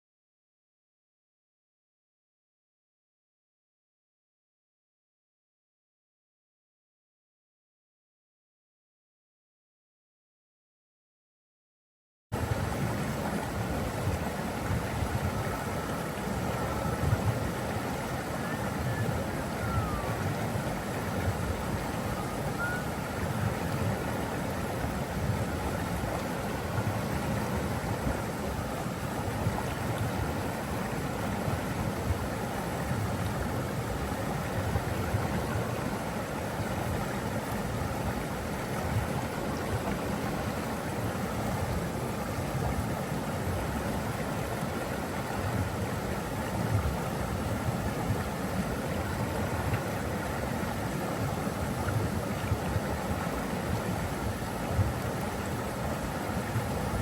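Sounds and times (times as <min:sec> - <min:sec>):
water flowing: 0:12.4 - 0:57.0.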